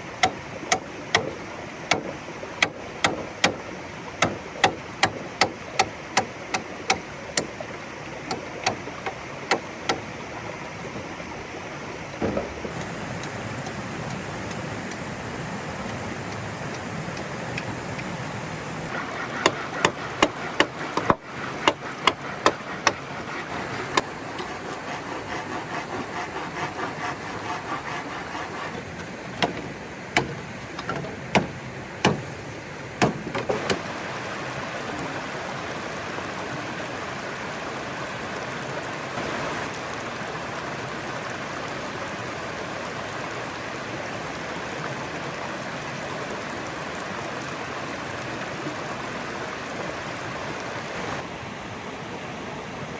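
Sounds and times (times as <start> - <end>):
flowing water rushing: 0.0 - 52.9
sharp knocks: 0.2 - 3.6, 12.2 - 12.9, 19.0 - 24.7, 25.4 - 32.4, 33.0 - 33.9.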